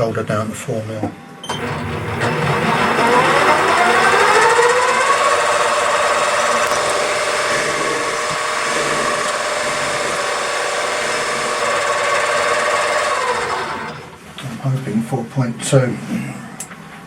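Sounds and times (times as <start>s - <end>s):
metal lathe motor whine: 1.5s - 14.2s.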